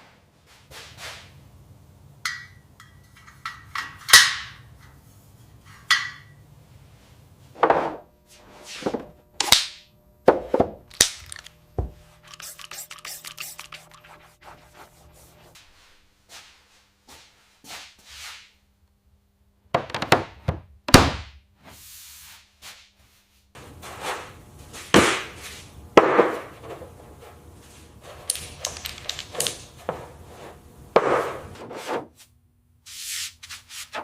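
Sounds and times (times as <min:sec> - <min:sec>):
short scraping strokes: 0:12.2 - 0:15.6.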